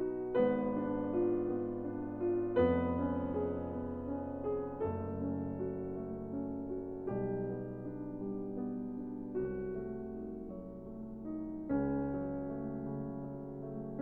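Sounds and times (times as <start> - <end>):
piano playing sustained chords: 0.0 - 14.0.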